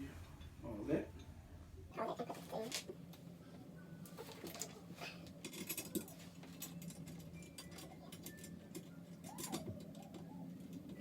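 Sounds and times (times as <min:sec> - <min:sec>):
low steady hum: 0:00.0 - 0:11.0
chair parts clicking and rattling: 0:04.1 - 0:11.0.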